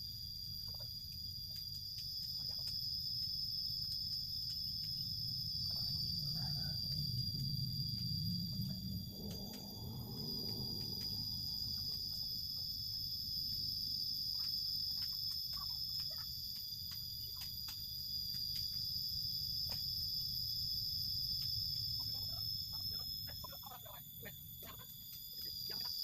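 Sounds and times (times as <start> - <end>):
high insect whine: 0.0 - 26.0
low background rumble: 3.5 - 14.3.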